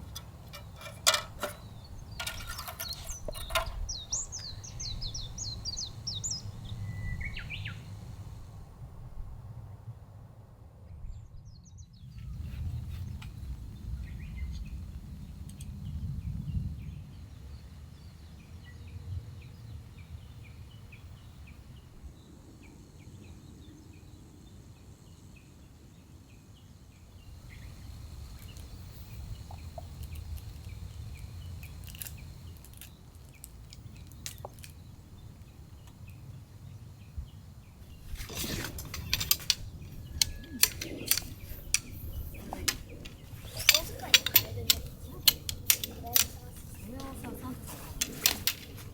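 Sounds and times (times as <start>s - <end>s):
sharp clicks and clattering: 0.0s - 4.5s, 38.0s - 47.2s, 48.0s - 48.9s
faint birds chirping: 0.0s - 8.8s, 11.0s - 48.9s.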